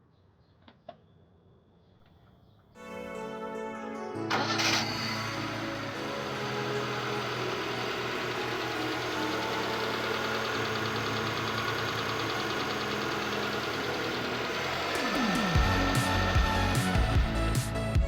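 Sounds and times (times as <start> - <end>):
car engine idling with ticking: 4.9 - 17.5.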